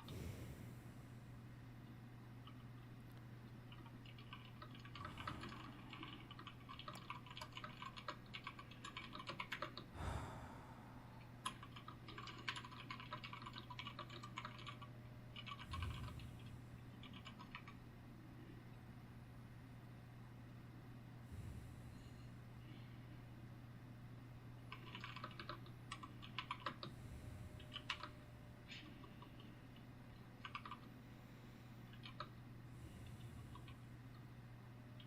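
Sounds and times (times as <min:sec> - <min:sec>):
soft breaths: 0:00.0 - 0:01.5, 0:04.9 - 0:06.4, 0:09.8 - 0:11.6, 0:15.5 - 0:17.0, 0:21.2 - 0:23.5, 0:26.7 - 0:29.9, 0:30.9 - 0:35.0
steady low hum: 0:00.0 - 0:35.0
keyboard typing clicks: 0:03.7 - 0:09.9, 0:11.4 - 0:17.8, 0:24.7 - 0:26.9, 0:27.6 - 0:28.1, 0:30.4 - 0:30.9, 0:31.9 - 0:32.3.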